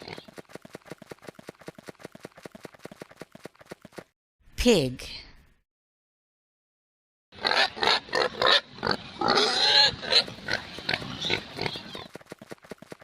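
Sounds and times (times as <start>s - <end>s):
pig oinking: 7.4s - 12.1s.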